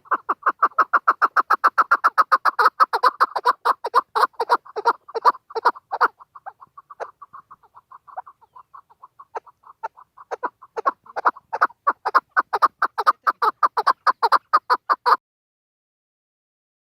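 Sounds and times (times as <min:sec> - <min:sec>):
partridge clucking calls: 0:00.0 - 0:15.2.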